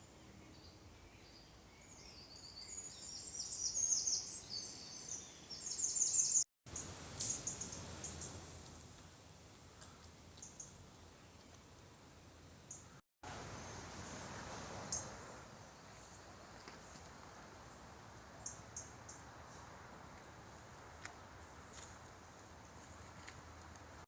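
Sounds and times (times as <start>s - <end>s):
faint background hiss: 0.0s - 20.8s
birds chirping: 0.2s - 8.4s.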